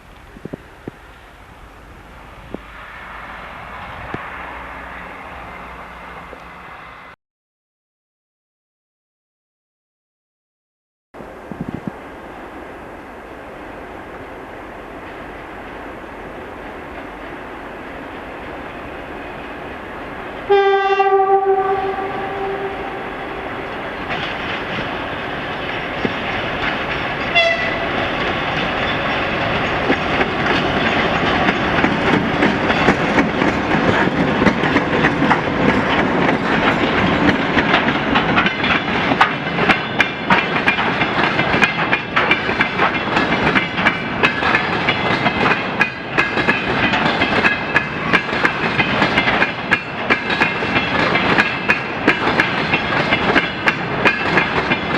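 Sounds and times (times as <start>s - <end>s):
train rolling past: 0.0s - 7.2s, 11.2s - 54.9s
wheels clacking over rail joints: 18.4s - 54.9s
locomotive horn blast: 20.5s - 23.7s, 27.3s - 28.0s.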